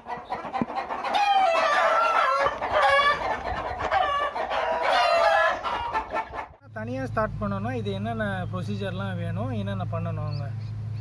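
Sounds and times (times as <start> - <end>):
hens clucking: 0.0 - 6.6
roosters crowing: 0.0 - 6.6.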